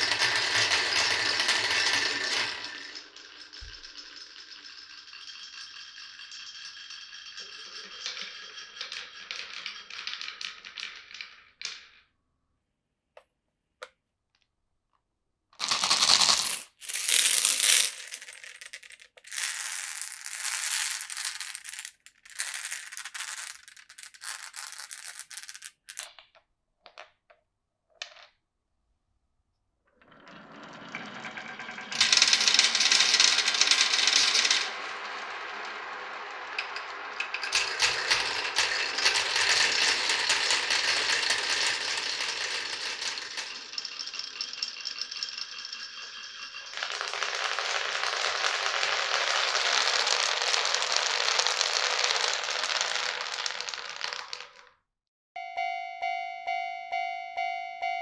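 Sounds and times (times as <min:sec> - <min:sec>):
marbles rattling down a marble run: 0:00.0 - 0:12.1, 0:15.6 - 0:26.2, 0:30.0 - 0:54.8
marble clicks: 0:15.6 - 0:27.3, 0:32.0 - 0:34.9, 0:36.3 - 0:54.7.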